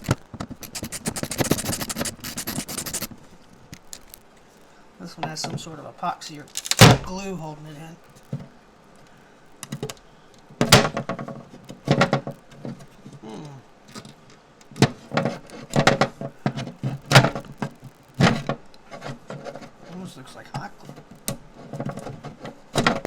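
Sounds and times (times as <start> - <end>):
prying and scraping light fixture: 0.0 - 3.1.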